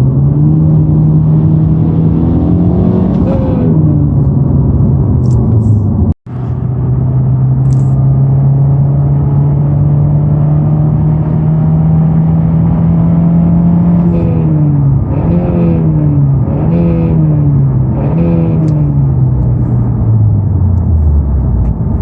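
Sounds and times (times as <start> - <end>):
car engine buzz: 0.0 - 22.0.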